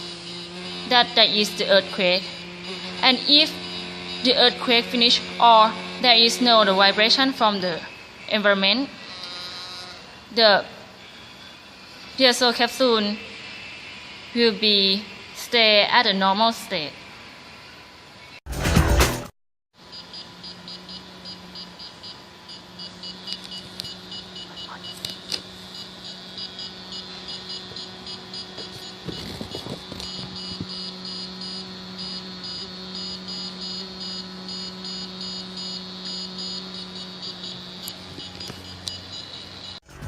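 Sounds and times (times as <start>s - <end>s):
rapid high-pitched alarm beeping: 0.0s - 9.9s, 19.8s - 39.8s.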